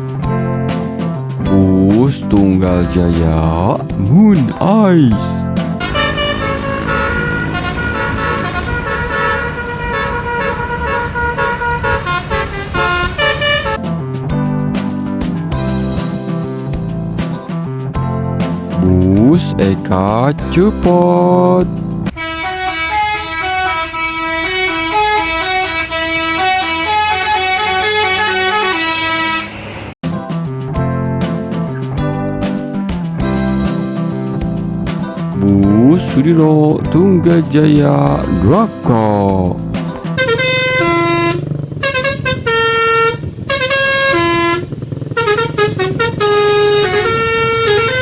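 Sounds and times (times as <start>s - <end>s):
multi-tone bus horn tune: 5.8s - 13.8s, 22.1s - 29.9s, 40.2s - 48.0s.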